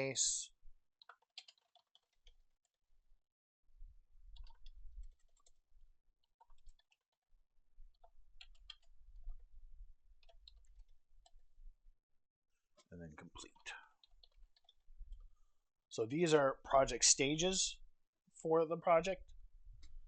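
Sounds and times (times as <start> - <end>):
keyboard and mouse clicking: 1.0 - 2.4, 4.3 - 5.6, 6.3 - 7.1, 7.9 - 8.9, 10.2 - 11.4, 13.4 - 15.2.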